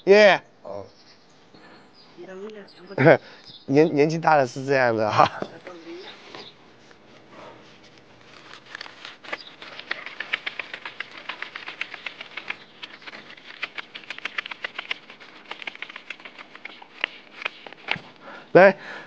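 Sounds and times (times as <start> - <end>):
banknotes flicking: 8.4 - 18.0.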